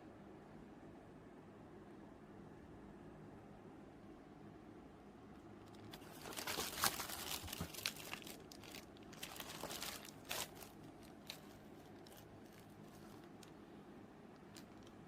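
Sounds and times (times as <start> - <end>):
close crinkling and rustling: 5.6 - 15.0.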